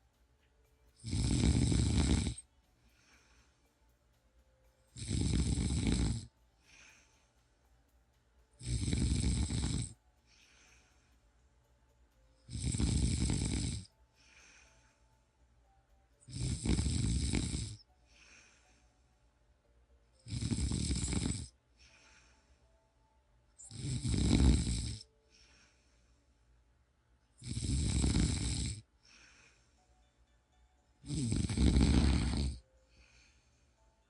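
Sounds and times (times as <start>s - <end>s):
person snoring: 1.0s - 2.4s, 4.9s - 7.1s, 8.6s - 11.0s, 12.5s - 15.0s, 16.2s - 18.7s, 20.2s - 22.4s, 23.6s - 25.8s, 27.4s - 29.8s, 31.0s - 33.9s
faint breath out: 10.2s - 11.3s, 18.0s - 19.2s, 21.7s - 22.8s, 29.0s - 30.0s, 32.8s - 33.9s.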